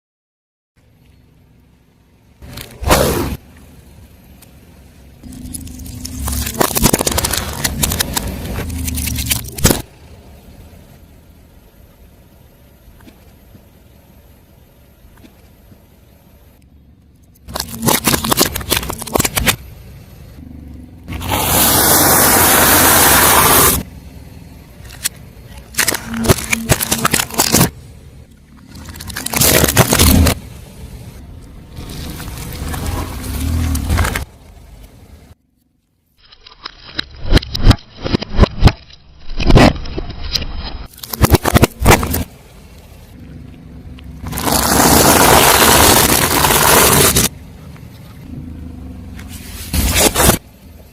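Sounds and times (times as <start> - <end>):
car engine running: 0.8 - 35.8, 40.7 - 50.9
tyre crushing crunchy objects: 5.2 - 9.9, 17.5 - 19.6, 24.9 - 27.8, 28.6 - 30.5, 31.8 - 34.4, 36.7 - 42.4, 44.2 - 47.4
sharp cracks and crackles: 5.2 - 10.0, 17.3 - 19.7, 24.8 - 30.6, 36.2 - 42.9, 44.2 - 47.4.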